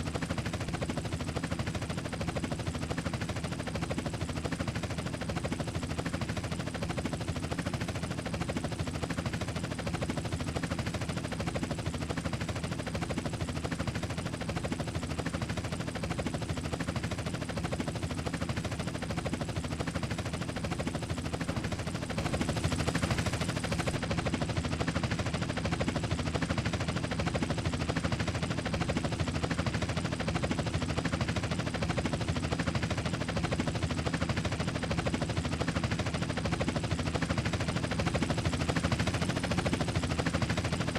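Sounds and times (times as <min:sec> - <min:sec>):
helicopter engine drone: 0:00.0 - 0:40.9
helicopter rotor chopping: 0:00.0 - 0:40.9.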